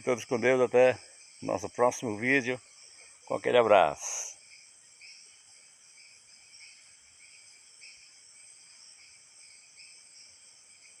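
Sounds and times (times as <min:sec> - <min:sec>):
insects trilling and chirping: 0:00.0 - 0:11.0.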